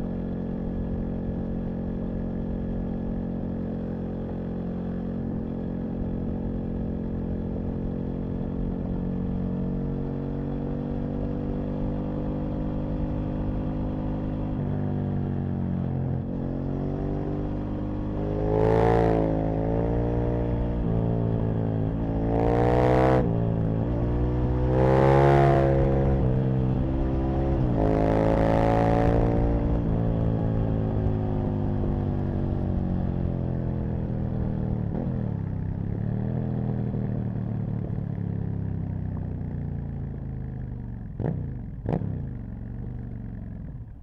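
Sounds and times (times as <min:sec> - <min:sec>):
motorcycle engine revving through gears: 0:03.6 - 0:44.0.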